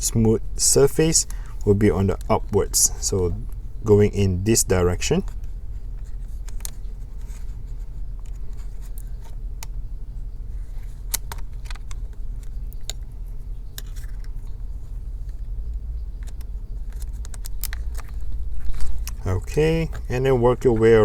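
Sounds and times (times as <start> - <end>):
steady low hum: 0.0 - 21.0
small clicks and taps of parts: 5.2 - 7.5, 10.7 - 13.1, 15.2 - 19.3.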